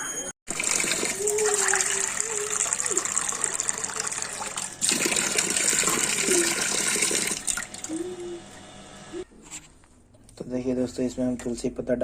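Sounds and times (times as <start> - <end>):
running water gushing: 0.5 - 8.1.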